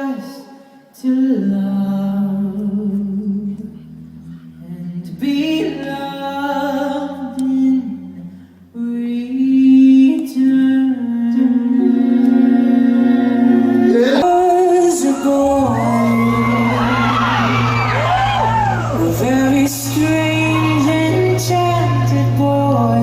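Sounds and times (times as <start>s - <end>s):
vocal group singing harmonies: 0.0s - 23.0s
low bass voice: 13.6s - 14.4s, 15.4s - 23.0s.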